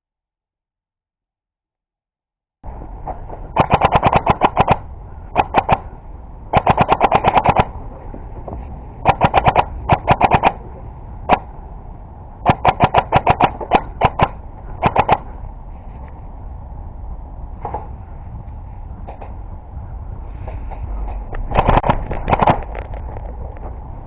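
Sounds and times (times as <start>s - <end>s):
airsoft rifle firing bursts: 3.0s - 7.8s, 9.0s - 10.7s, 12.4s - 15.3s, 21.5s - 22.7s.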